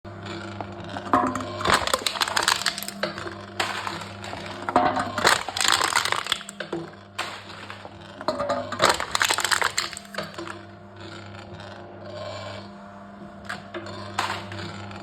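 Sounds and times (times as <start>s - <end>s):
machine crushing cans: 0.9s - 10.7s, 13.5s - 15.0s.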